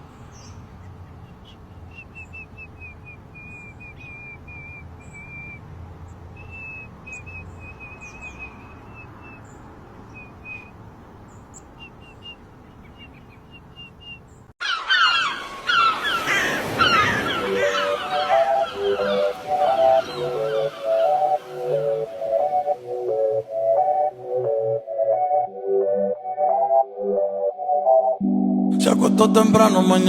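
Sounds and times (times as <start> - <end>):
loud gliding calls: 14.6 - 25.5.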